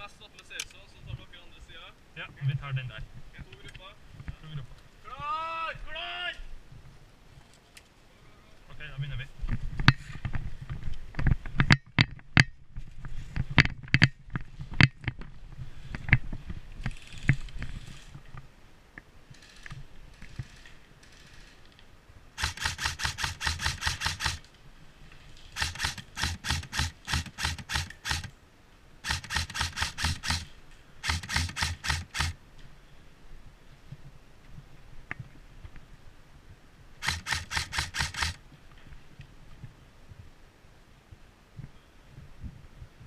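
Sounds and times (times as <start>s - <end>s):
airsoft gun firing bursts: 22.4s - 24.5s, 25.6s - 28.4s, 29.0s - 32.4s, 37.0s - 38.4s.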